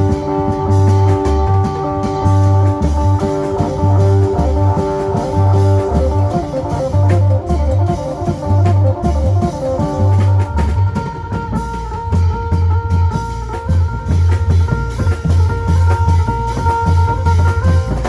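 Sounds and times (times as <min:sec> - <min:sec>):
plucked lute melody: 0:00.0 - 0:10.2
low bass figure: 0:00.0 - 0:11.2
held drone notes: 0:00.0 - 0:11.6.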